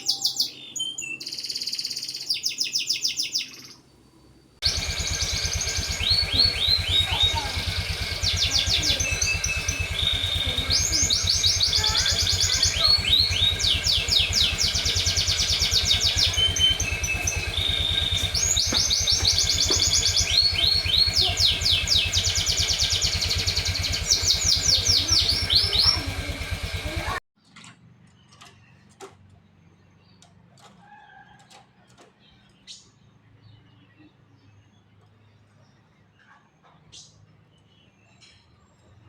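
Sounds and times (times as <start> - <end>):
low motor-like hum: 3.9 - 27.2
songbird trilling: 4.6 - 27.0.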